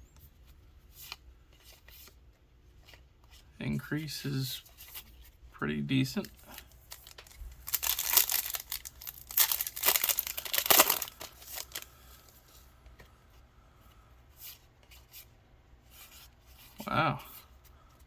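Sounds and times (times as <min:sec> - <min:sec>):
faint handling rustle: 0:00.2 - 0:18.0
foil pack crinkling and tearing: 0:06.2 - 0:11.9.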